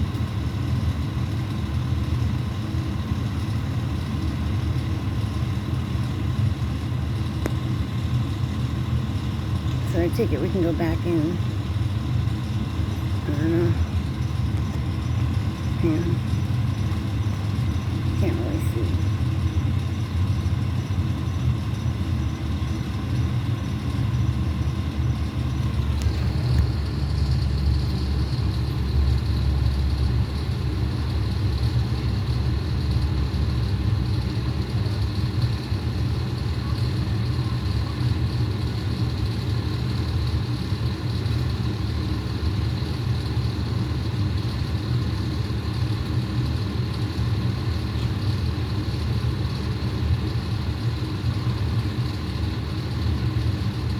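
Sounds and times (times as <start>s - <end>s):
truck engine idling: 5.3s - 35.4s.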